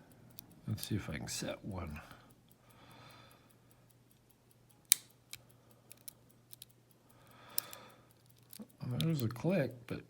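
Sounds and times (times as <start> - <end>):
faint lock pick ticks: 0.0 - 10.0
lock pick clicking in padlock: 4.8 - 6.8, 7.6 - 9.2.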